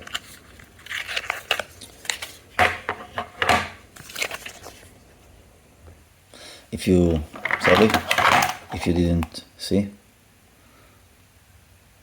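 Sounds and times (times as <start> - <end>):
packaging crinkling: 0.0 - 5.0, 7.3 - 8.9.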